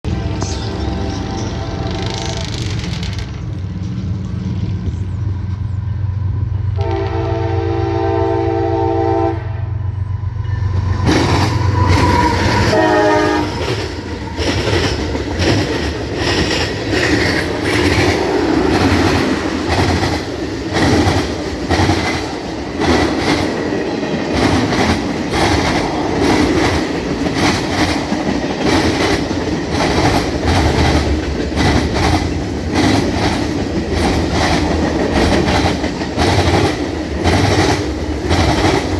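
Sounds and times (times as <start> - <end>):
locomotive engine drone: 0.0 - 38.9
train horn: 0.1 - 3.0, 6.7 - 10.0, 11.3 - 14.8
train wheels clattering: 10.6 - 38.9.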